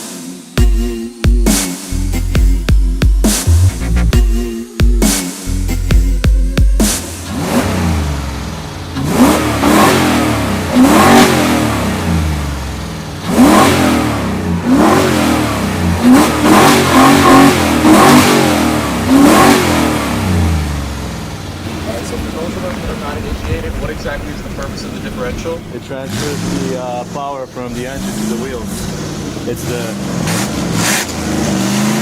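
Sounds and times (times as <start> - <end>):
engine revving over idle: 2.0 - 4.2, 5.5 - 32.0
leaking exhaust: 6.8 - 32.0.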